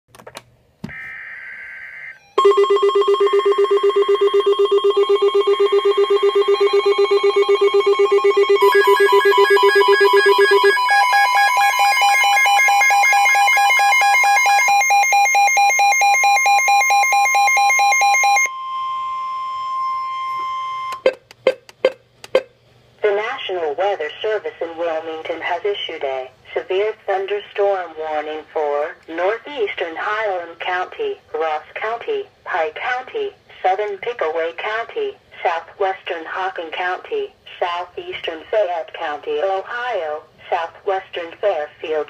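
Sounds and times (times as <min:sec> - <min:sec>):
pulsing multi-pitched alarm tone: 0:00.9 - 0:21.2
high warbling data tones: 0:05.7 - 0:22.0.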